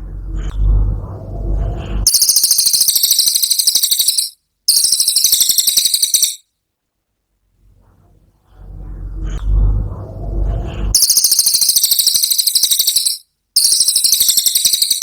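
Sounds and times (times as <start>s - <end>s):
songbird rattling trills: 2.1s - 6.4s, 11.0s - 15.0s.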